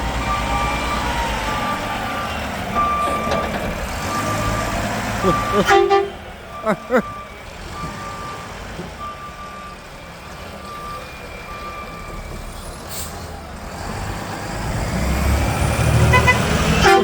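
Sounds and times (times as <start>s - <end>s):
truck reversing beeper: 0.0s - 13.2s
truck engine: 0.0s - 17.0s.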